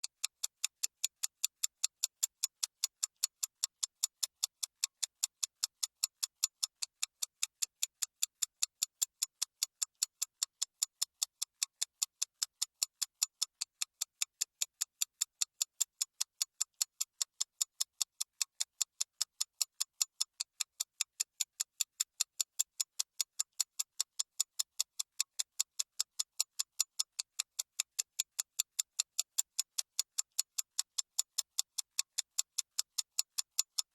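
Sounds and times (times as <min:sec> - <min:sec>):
clock ticking: 0:00.0 - 0:33.9.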